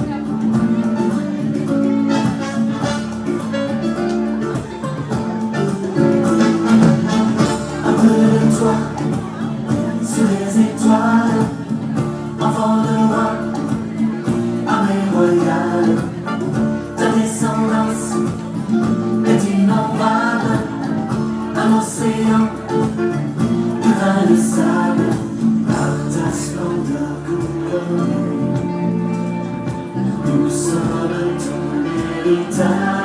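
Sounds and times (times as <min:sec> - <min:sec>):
guitar accompaniment: 0:00.0 - 0:33.0
worship song singing: 0:06.6 - 0:18.6, 0:19.2 - 0:23.0, 0:23.6 - 0:29.0, 0:29.9 - 0:33.0.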